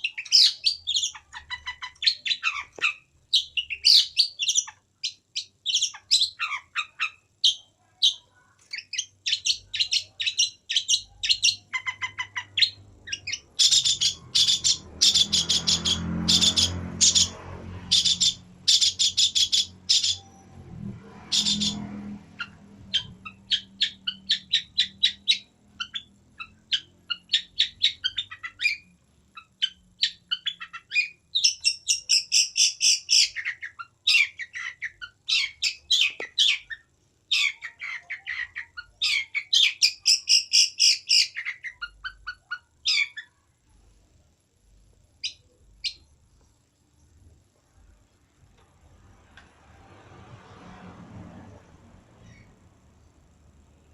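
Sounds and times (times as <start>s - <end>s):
bird singing chirps and trills: 0.0s - 20.6s, 21.2s - 21.8s, 22.4s - 43.4s.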